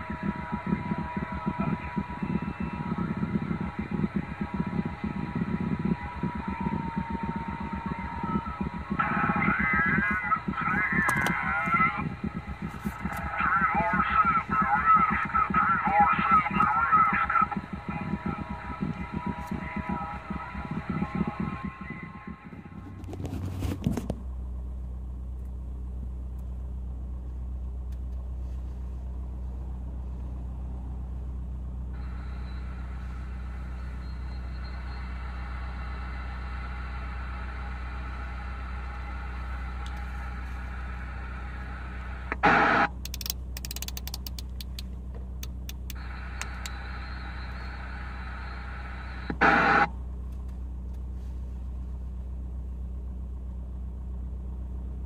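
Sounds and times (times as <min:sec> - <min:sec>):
radio signal bursts: 0:00.0 - 0:23.2, 0:32.0 - 0:43.8, 0:45.9 - 0:49.9
radio static hiss: 0:00.0 - 0:23.8, 0:32.0 - 0:44.4, 0:45.7 - 0:49.9
steady low hum: 0:00.0 - 0:55.0
radio clicks: 0:00.1 - 0:24.2, 0:39.7 - 0:40.4, 0:42.1 - 0:48.0, 0:48.9 - 0:50.5.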